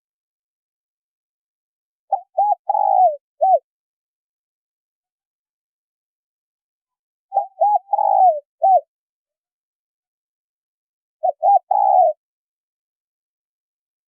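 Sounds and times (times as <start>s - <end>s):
dove cooing: 2.1s - 3.7s, 7.3s - 8.9s, 11.2s - 12.2s.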